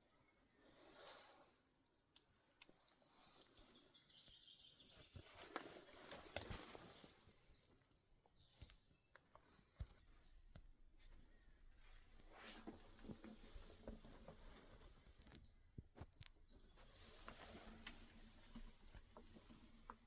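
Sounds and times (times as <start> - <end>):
rustling: 4.9 - 7.8, 11.0 - 20.0.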